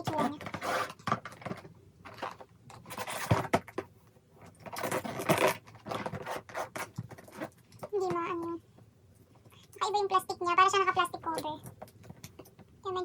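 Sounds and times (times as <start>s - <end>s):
packaging scraping and rustling: 0.1s - 7.8s.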